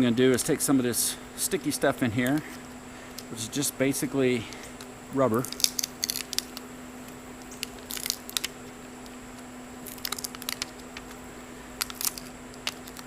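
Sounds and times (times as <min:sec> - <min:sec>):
plastic packaging crinkling: 0:04.5 - 0:13.0.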